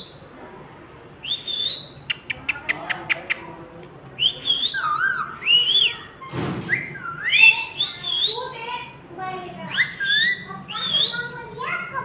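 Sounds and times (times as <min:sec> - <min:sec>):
parakeet sharp clicks: 0:02.1 - 0:03.5
parakeet whistled notes: 0:04.2 - 0:08.5, 0:09.7 - 0:11.3.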